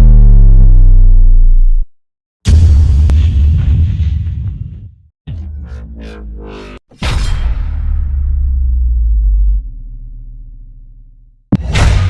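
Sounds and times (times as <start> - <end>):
deep sub-bass hit: 0.0 - 1.9, 2.5 - 4.9, 7.0 - 12.0
steady deep bass: 0.0 - 1.9, 5.3 - 6.9, 7.7 - 12.0.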